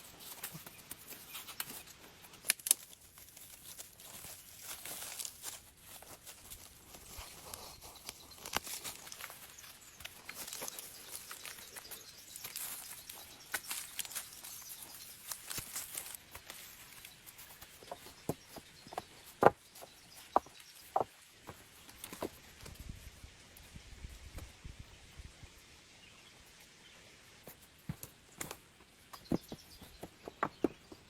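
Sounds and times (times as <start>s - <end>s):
rustling in dry leaves: 0.0s - 24.2s.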